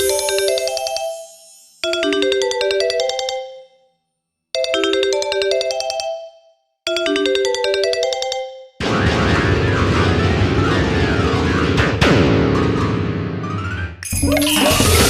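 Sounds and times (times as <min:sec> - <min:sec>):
synthesized chime ringtone: 0:00.0 - 0:03.8
dense noisy wall of notes: 0:08.8 - 0:13.6.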